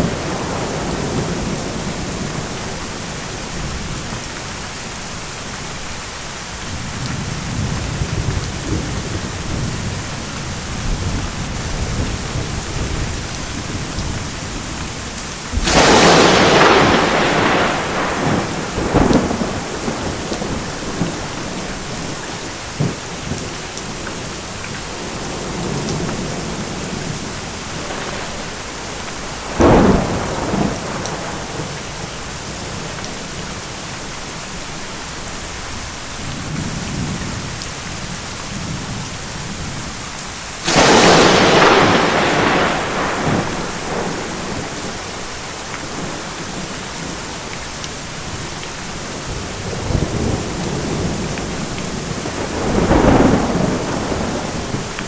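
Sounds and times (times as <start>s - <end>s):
low thunder rumbles: 0.0s - 4.6s, 6.6s - 33.8s, 35.5s - 55.0s
heavy rain: 0.0s - 55.0s
thunder crack: 15.5s - 22.1s, 25.4s - 32.3s, 40.6s - 46.3s, 49.6s - 55.0s.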